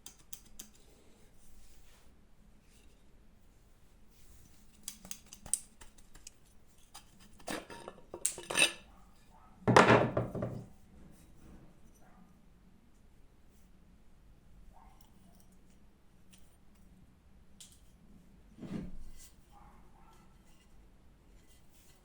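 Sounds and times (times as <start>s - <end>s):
metal objects clinking: 7.4s - 8.8s
dull knock: 9.7s - 10.6s.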